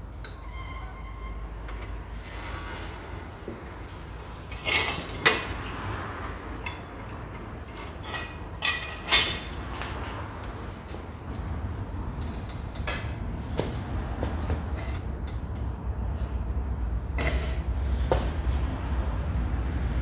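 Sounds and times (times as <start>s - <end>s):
hammer striking metal wrench: 8.0s - 9.5s.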